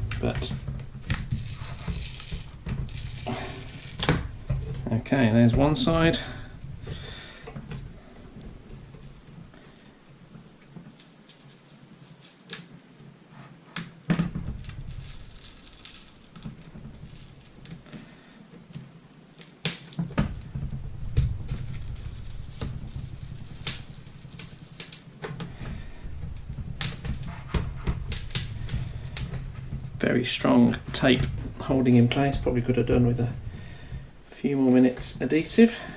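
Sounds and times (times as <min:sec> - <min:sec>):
low handling rumble: 0:00.0 - 0:10.6, 0:20.2 - 0:24.7, 0:25.4 - 0:35.9
plastic and tape clicking: 0:21.1 - 0:29.4.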